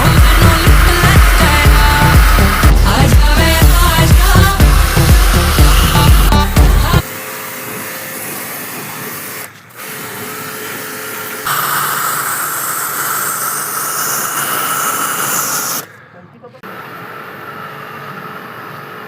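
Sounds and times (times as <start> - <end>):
small electric motor whirring: 0.0 - 15.9.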